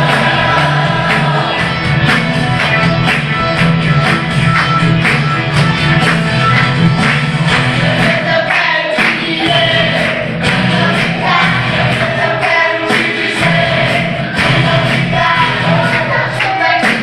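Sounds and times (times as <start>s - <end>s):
children's choir singing: 0.0s - 3.6s, 7.0s - 17.0s
instrumental accompaniment with beat: 0.0s - 17.0s.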